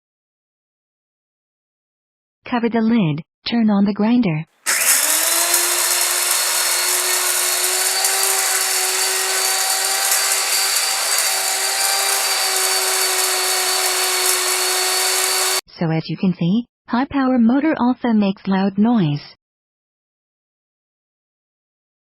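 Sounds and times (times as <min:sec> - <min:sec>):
blade grinding grains: 0:04.7 - 0:15.6
electric grain grinder whining: 0:04.7 - 0:15.6.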